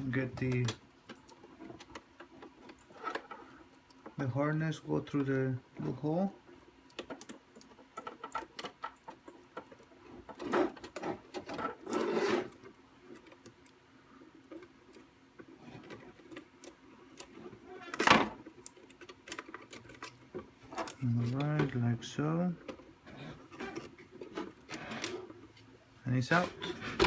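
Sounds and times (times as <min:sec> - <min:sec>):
plastic scraping on plastic: 0:00.0 - 0:04.3, 0:06.9 - 0:27.0.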